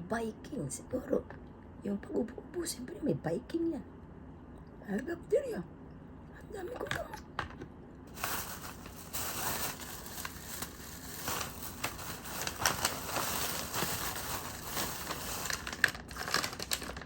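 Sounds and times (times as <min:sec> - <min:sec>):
packaging crinkling: 0:08.1 - 0:17.0.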